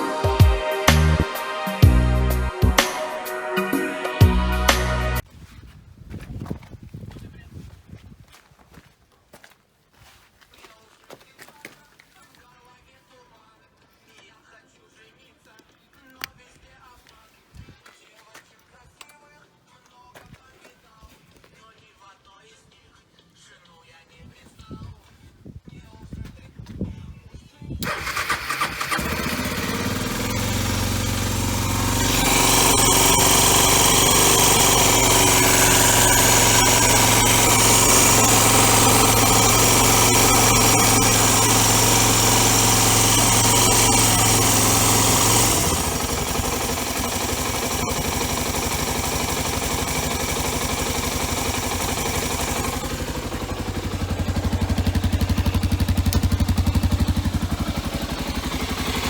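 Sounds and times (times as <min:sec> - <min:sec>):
motorcycle engine revving and idling: 0:00.0 - 0:03.0, 0:27.8 - 0:59.0.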